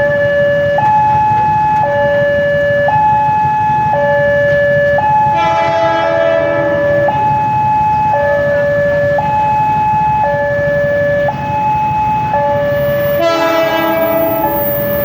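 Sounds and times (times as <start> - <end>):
two-tone hi-lo siren: 0.0 - 15.0
train air horn blast: 5.4 - 7.1, 12.8 - 15.0.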